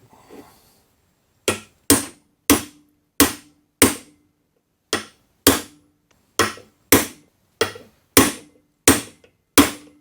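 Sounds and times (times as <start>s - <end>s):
hammer tapping on metal: 6.4s - 10.0s.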